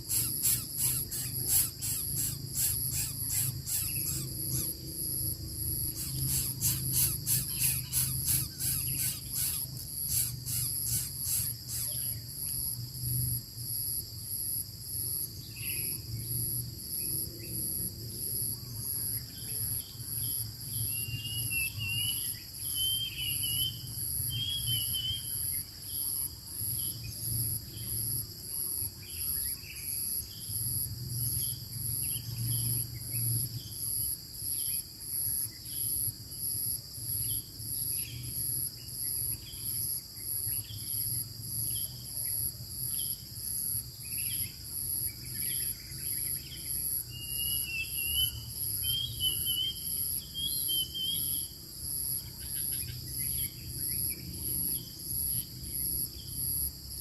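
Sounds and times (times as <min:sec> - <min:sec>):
bird chirps: 0:00.0 - 0:12.2, 0:45.2 - 0:51.5
insects chirring: 0:00.0 - 0:57.0.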